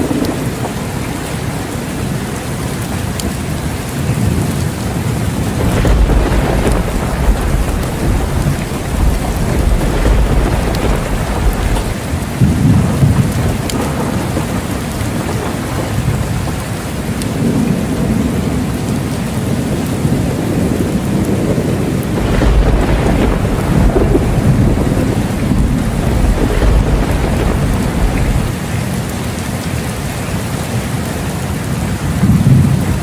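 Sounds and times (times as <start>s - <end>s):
thunder rumbling: 0.0s - 2.2s, 3.4s - 29.1s, 31.4s - 33.0s
steady rain: 0.0s - 33.0s.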